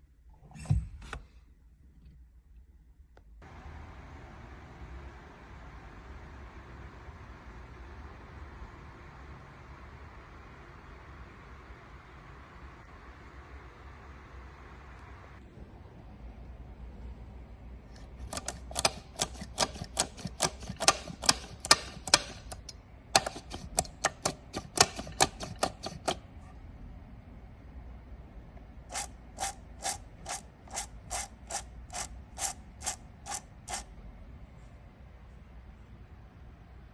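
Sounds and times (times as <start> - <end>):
clutch clicking: 18.1 - 26.2.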